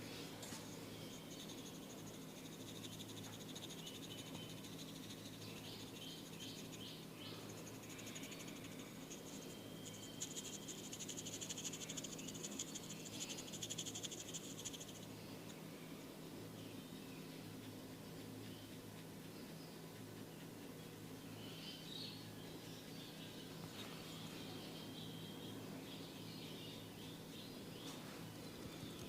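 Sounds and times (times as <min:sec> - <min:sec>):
low steady hum: 0:00.0 - 0:29.0
insects trilling: 0:00.7 - 0:16.7.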